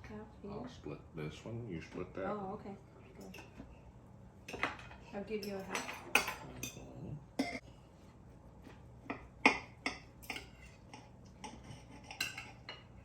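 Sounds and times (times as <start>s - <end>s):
cutlery clinking on plates: 4.5s - 6.9s, 9.1s - 12.9s.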